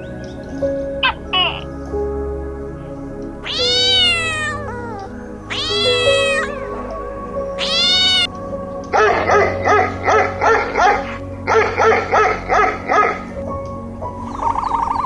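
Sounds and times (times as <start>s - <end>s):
background music: 0.0s - 15.0s
animal calling: 1.0s - 1.7s, 3.4s - 15.0s.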